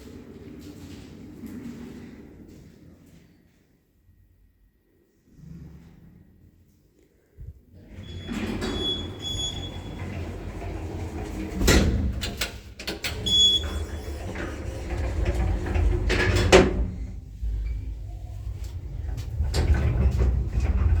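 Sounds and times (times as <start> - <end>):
lift low rumble: 7.4 - 12.5, 13.1 - 21.0
lift doors sliding and clunking: 7.8 - 21.0.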